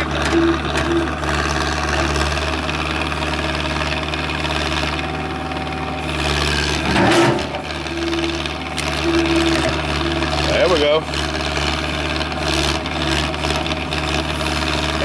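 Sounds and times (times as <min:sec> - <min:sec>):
diesel engine under load: 0:00.0 - 0:15.0
hydraulic whine: 0:04.9 - 0:15.0.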